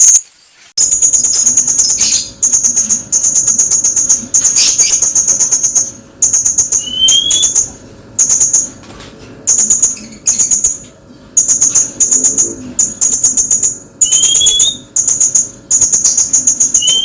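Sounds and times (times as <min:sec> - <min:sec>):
parrots chittering: 0:00.0 - 0:08.8, 0:09.5 - 0:10.8, 0:11.4 - 0:17.0
bird rising whistle: 0:06.8 - 0:07.6, 0:14.0 - 0:14.9, 0:16.8 - 0:17.0.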